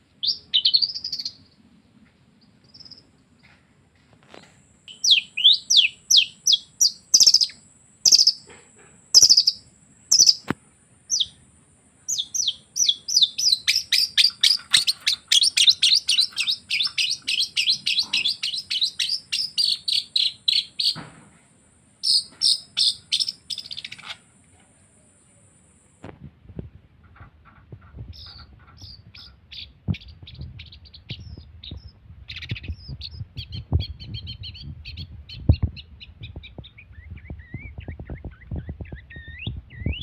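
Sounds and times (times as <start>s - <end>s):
shrike singing: 4.9s - 8.5s, 9.2s - 21.0s.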